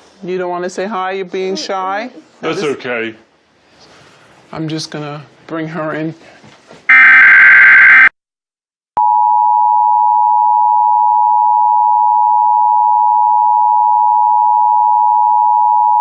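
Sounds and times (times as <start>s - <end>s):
two-tone alert signal: 6.9s - 8.1s.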